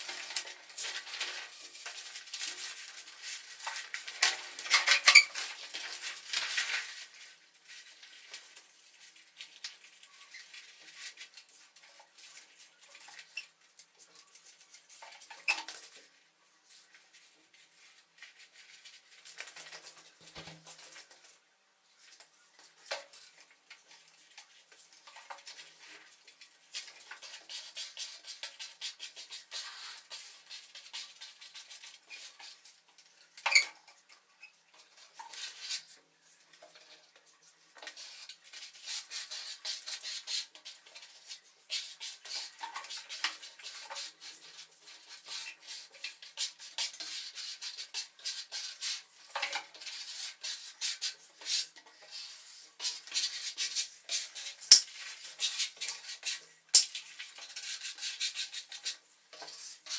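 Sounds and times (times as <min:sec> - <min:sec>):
tools clicking and scraping: 0:54.2 - 0:56.0, 0:56.7 - 0:57.6.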